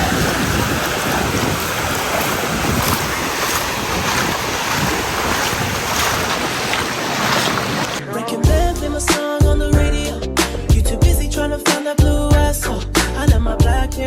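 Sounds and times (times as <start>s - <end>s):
wind buffeting microphone: 0.0s - 8.0s
ocean surf rushing: 0.0s - 8.1s.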